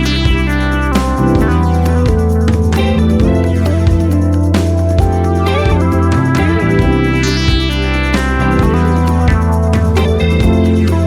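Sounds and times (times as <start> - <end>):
sustained bass: 0.0 - 11.0
plucked guitar notes: 2.7 - 8.7.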